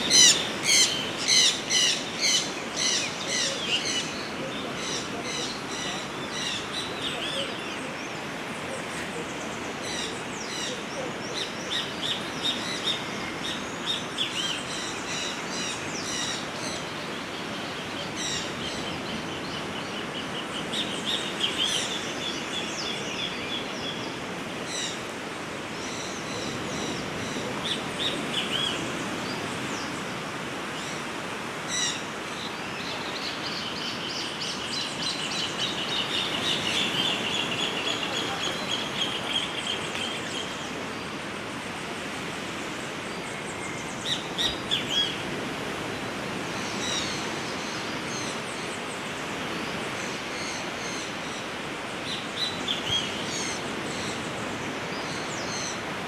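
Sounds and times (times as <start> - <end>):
rapid bird trills: 0.0 - 3.2
small birds chirping: 0.0 - 7.4, 32.5 - 41.2.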